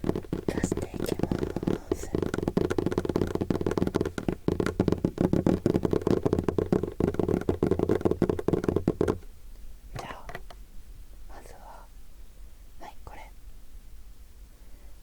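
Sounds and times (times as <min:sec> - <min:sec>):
object rubbed at microphone crackling: 0:00.0 - 0:09.2.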